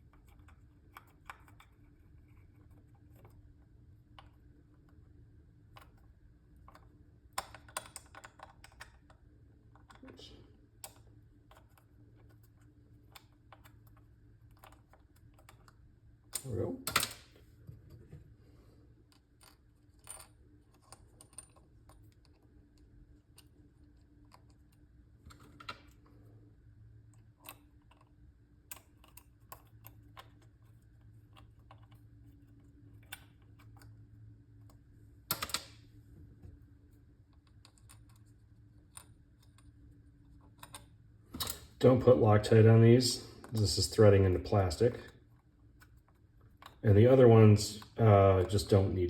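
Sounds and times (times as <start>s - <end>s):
faint low hum: 0.0s - 49.0s.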